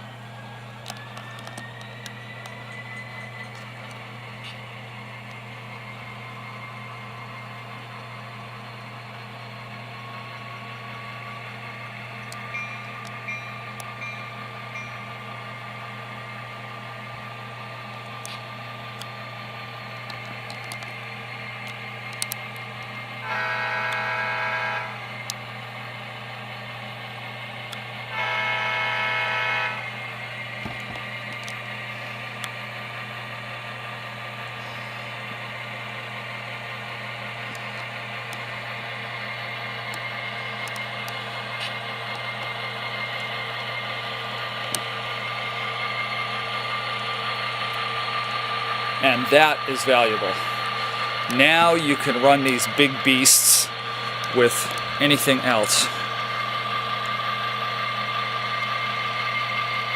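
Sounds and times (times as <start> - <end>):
model diesel engine sound: 0.0 - 59.9
multi-note horn blasts: 23.2 - 25.1, 28.1 - 29.9.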